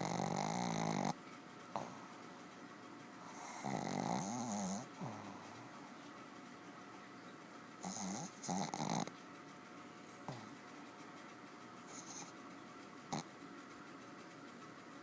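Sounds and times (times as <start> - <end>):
dog snoring heavily: 0.0 - 1.2, 3.2 - 5.7, 7.8 - 9.1, 10.2 - 10.6, 11.8 - 12.4, 13.1 - 13.3.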